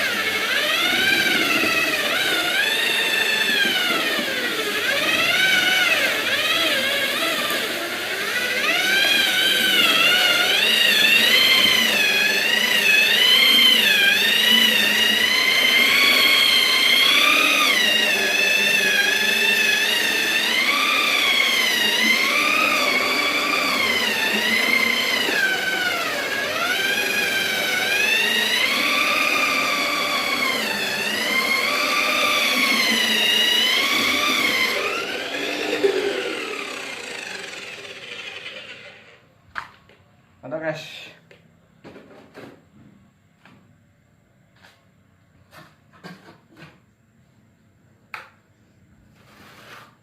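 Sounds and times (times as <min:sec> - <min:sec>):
power sander motor whine: 0:00.0 - 0:39.2.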